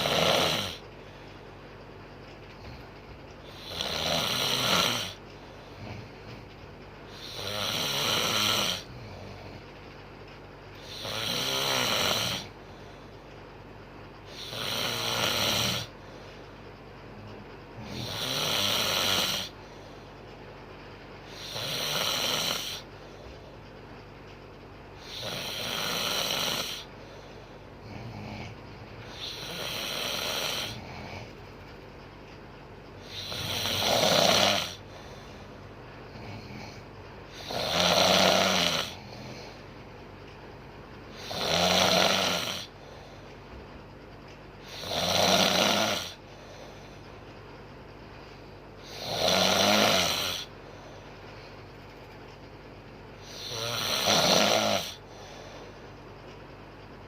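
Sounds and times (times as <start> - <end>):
woman snoring: 0.0 - 0.8, 3.4 - 5.2, 7.1 - 9.6, 10.8 - 12.6, 14.3 - 15.9, 17.8 - 19.6, 21.3 - 22.9, 25.0 - 26.9, 27.8 - 31.3, 33.0 - 34.9, 36.1 - 39.6, 41.1 - 42.8, 44.6 - 46.2, 48.8 - 50.5, 53.2 - 55.3.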